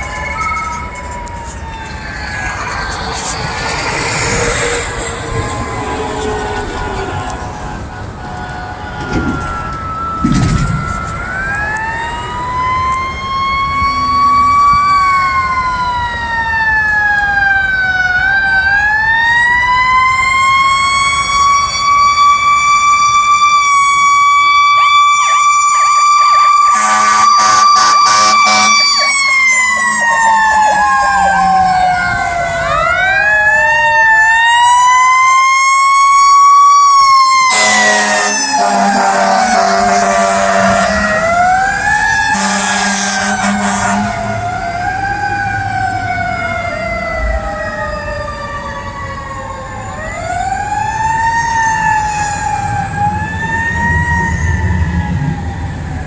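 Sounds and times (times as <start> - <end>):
fire engine sirens wailing: 0.0 - 56.0
air horn blasts: 4.5 - 11.4, 26.7 - 31.7, 37.4 - 41.6, 42.3 - 44.4.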